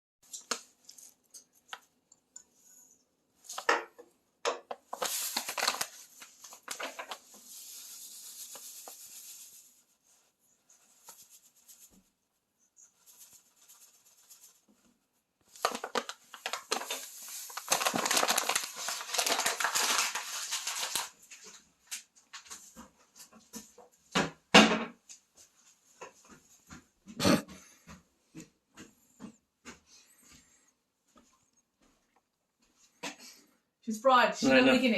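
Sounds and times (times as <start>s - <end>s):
packaging crinkling and tearing: 4.7s - 9.6s, 15.5s - 21.4s.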